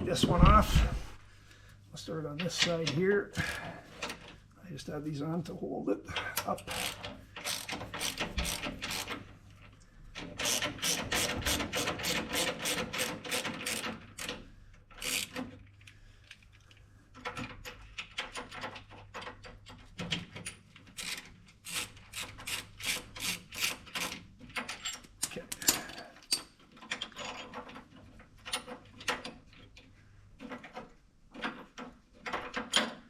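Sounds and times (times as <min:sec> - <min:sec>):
socket ratchet clicking: 0:06.6 - 0:09.2.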